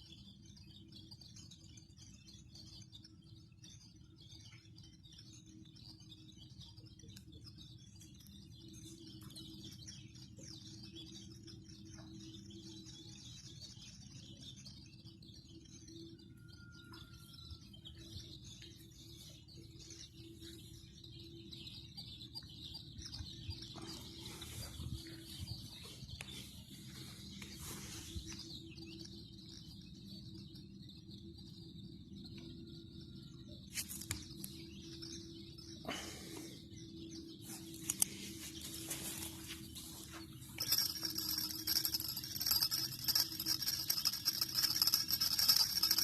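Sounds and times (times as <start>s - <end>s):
birds chirping and singing: 0.1s - 46.0s
steady low hum: 33.9s - 46.0s.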